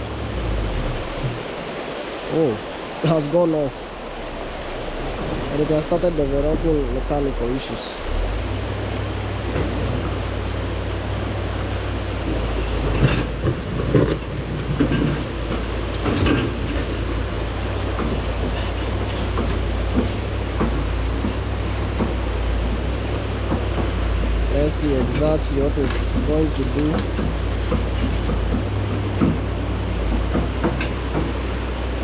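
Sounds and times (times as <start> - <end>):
diesel engine rumbling: 0.0 - 32.0
metal clanks and knocks: 12.2 - 31.8.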